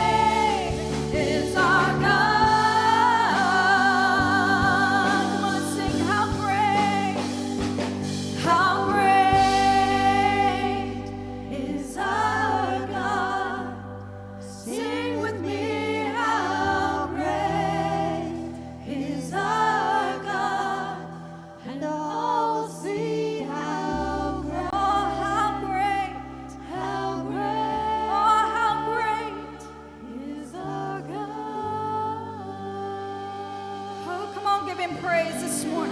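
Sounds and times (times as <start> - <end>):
held low chords: 0.0 - 21.9
voices singing gospel song: 0.0 - 35.9.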